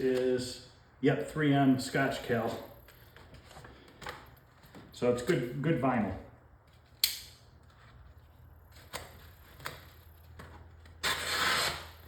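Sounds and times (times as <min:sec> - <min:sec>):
sharp click: 0:07.0 - 0:07.4
rasping swish of paper: 0:10.9 - 0:12.0.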